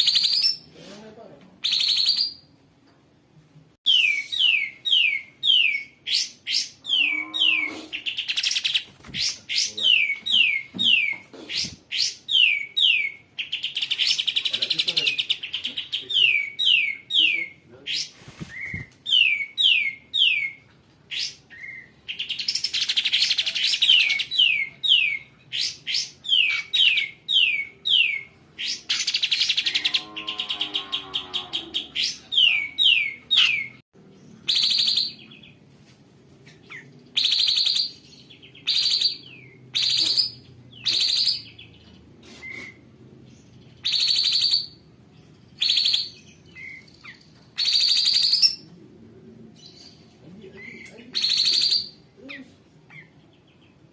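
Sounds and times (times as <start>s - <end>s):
songbird chirping and trilling: 0.0s - 0.8s, 1.6s - 2.5s, 3.9s - 35.6s, 36.4s - 53.9s.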